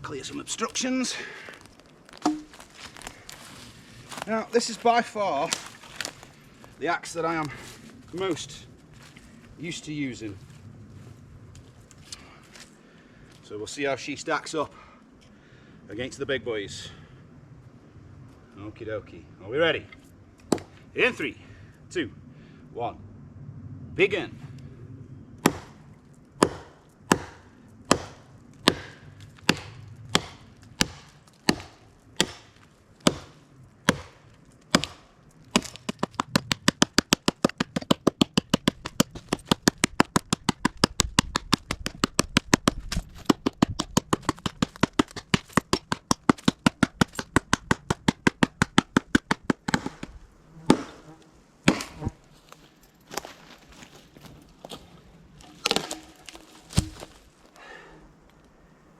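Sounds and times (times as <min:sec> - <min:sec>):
axe chopping log: 0:02.2 - 0:02.6, 0:20.5 - 0:20.7, 0:25.4 - 0:25.8, 0:26.4 - 0:51.0, 0:51.7 - 0:52.1, 0:55.4 - 0:57.3.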